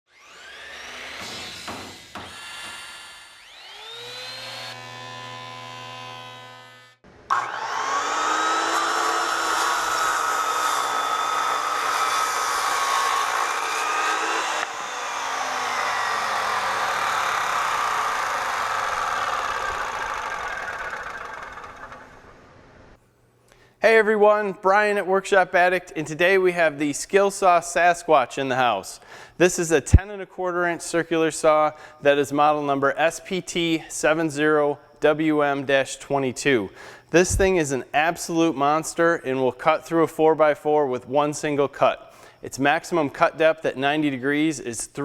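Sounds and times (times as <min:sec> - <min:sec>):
saw cutting through lumber: 0:00.1 - 0:22.5
circular saw whining: 0:00.1 - 0:23.0.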